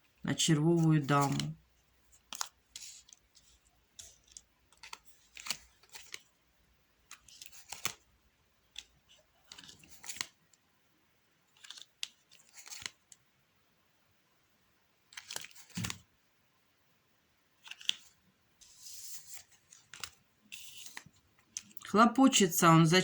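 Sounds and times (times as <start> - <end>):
playing cards snapping and rustling: 2.2 - 6.3, 7.0 - 8.1, 8.7 - 10.4, 11.5 - 13.2, 15.1 - 16.1, 17.6 - 21.8.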